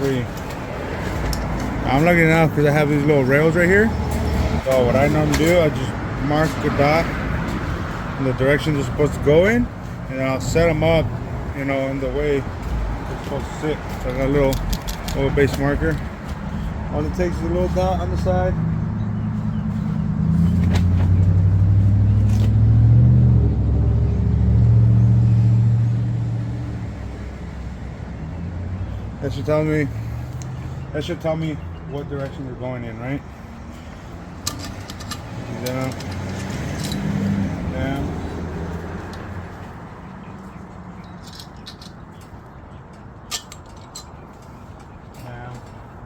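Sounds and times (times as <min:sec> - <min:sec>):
vehicle engine humming: 0:00.0 - 0:46.0
small metal parts clicking: 0:34.4 - 0:37.1, 0:41.0 - 0:42.4, 0:43.3 - 0:44.5.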